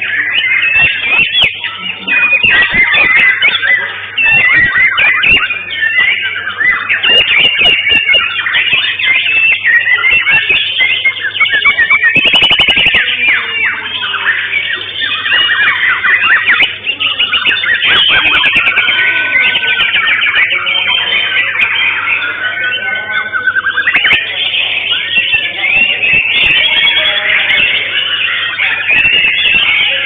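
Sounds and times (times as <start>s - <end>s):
bird chattering rattle: 0.0s - 13.3s
songbirds singing: 0.0s - 30.0s.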